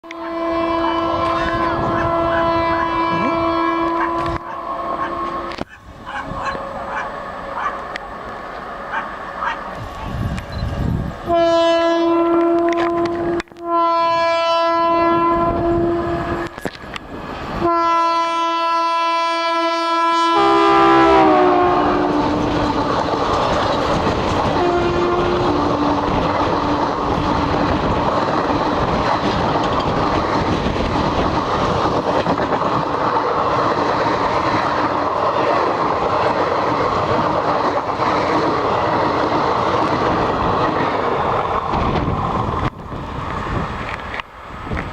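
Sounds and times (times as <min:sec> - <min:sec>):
locomotive horn blasts: 0:00.0 - 0:05.7, 0:11.3 - 0:16.6, 0:17.6 - 0:22.9, 0:24.6 - 0:26.2
train wheels on rails: 0:00.0 - 0:44.9.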